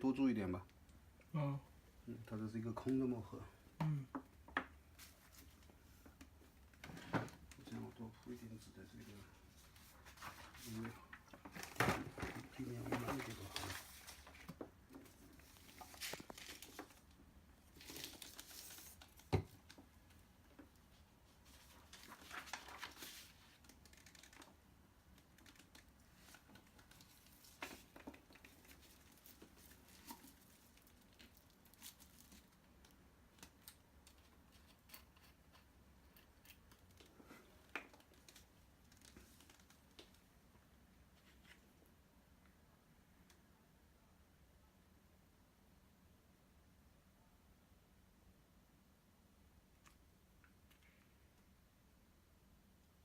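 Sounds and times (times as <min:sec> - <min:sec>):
paper rustling and crinkling: 0:07.6 - 0:19.8, 0:20.9 - 0:24.6, 0:25.2 - 0:34.8.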